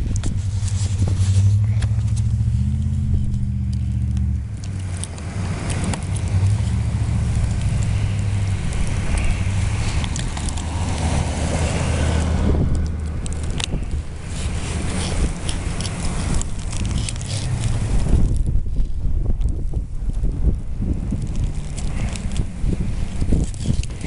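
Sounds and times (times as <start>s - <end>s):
car engine humming: 0.0s - 24.0s
tyres on snowy street: 0.0s - 24.0s
footsteps crunching in snow: 0.2s - 3.9s, 13.8s - 18.2s.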